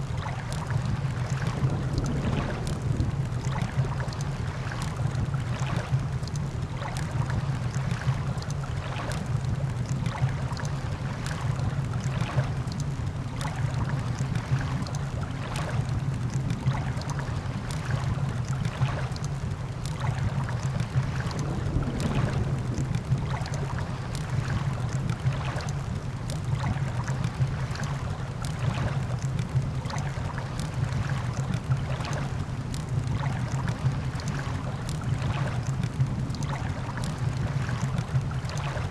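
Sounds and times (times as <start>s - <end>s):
low rumble of beach and storm: 0.0s - 38.9s
campfire crackling and popping: 1.6s - 5.5s, 18.4s - 27.4s, 28.1s - 37.2s.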